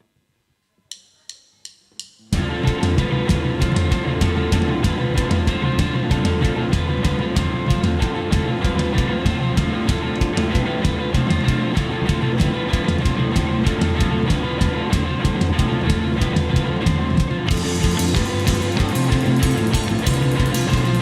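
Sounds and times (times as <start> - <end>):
drum kit beat: 0.9 - 21.0
electric guitar: 2.3 - 21.0
cymbals: 17.5 - 21.0.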